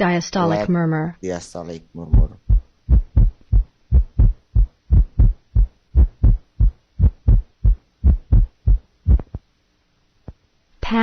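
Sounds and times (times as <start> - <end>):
heart murmur: 2.1 - 9.4
heartbeat thuds: 2.1 - 9.5.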